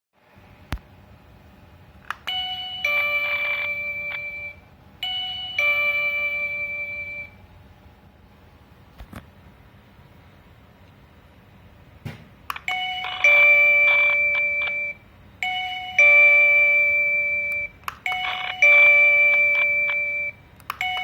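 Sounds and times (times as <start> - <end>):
doorbell ding-dong chime: 2.3 - 7.4, 12.7 - 21.0.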